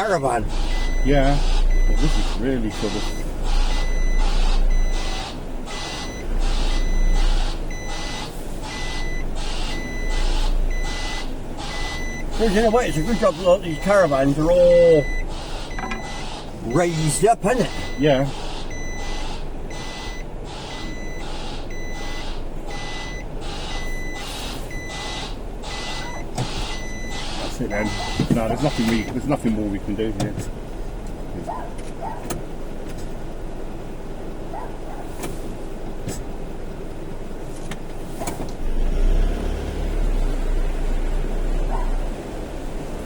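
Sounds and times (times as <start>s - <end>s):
reversing alarm beeps: 0.0s - 29.2s
lorry engine rumble: 0.0s - 43.0s.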